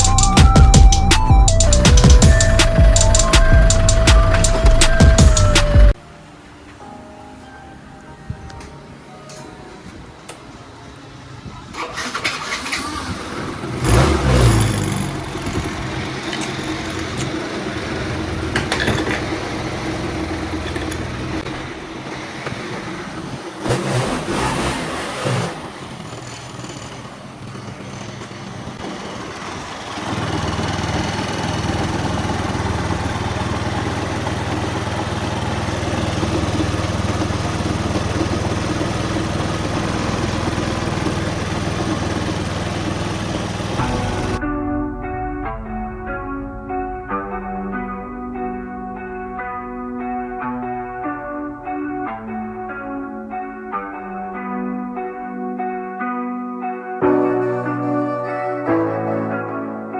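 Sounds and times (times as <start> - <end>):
scooter engine revving: 0.0 - 6.0, 11.8 - 44.4.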